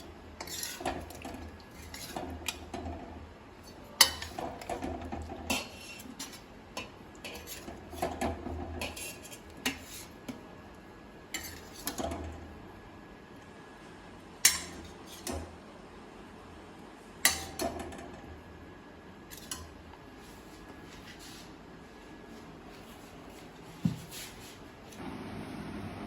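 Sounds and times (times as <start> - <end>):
metal spoon scraping a pan: 0.4 - 1.1, 1.7 - 2.7, 3.7 - 10.4, 11.4 - 12.2, 19.3 - 19.8.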